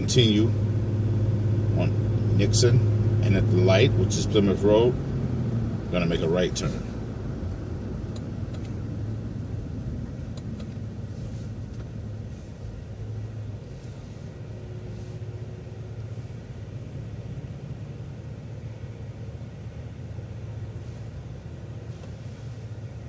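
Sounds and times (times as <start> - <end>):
bus engine drone: 0.0 - 23.0
road rumble: 0.0 - 23.0.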